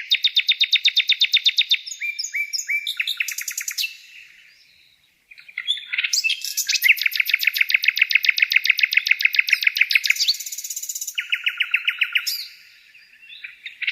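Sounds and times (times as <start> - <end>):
bird trilling: 5.3 - 13.9.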